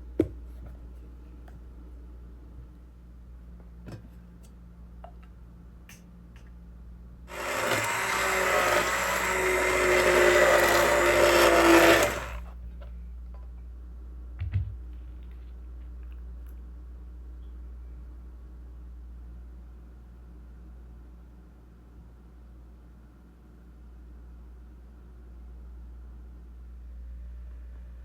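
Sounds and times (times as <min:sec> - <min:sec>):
electric blender running: 0:07.3 - 0:12.5.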